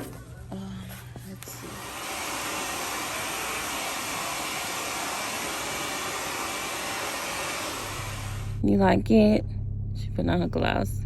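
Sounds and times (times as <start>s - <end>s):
hair dryer blowing: 1.4s - 8.6s.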